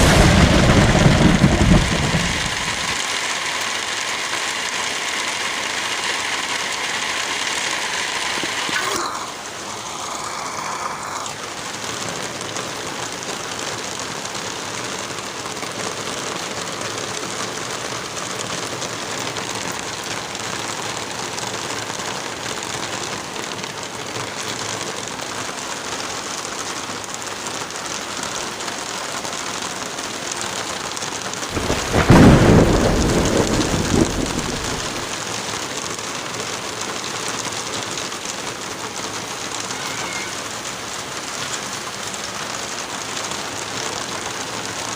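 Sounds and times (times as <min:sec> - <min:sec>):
thunder rumbling: 0:00.0 - 0:03.1, 0:31.5 - 0:35.3
steady rain: 0:00.0 - 0:44.9.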